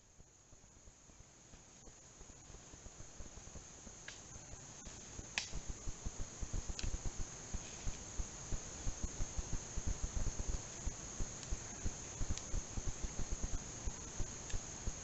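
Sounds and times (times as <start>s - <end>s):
insect chorus: 0.0s - 15.0s
sharp snaps: 4.0s - 4.3s, 5.3s - 5.6s, 6.7s - 7.0s, 11.4s - 11.6s.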